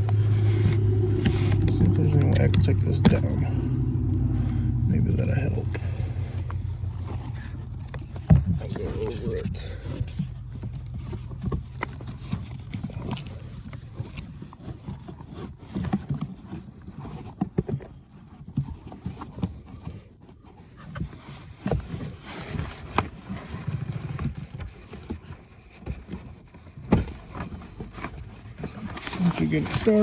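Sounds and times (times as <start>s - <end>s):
filter scraping against plastic: 0.0s - 30.0s.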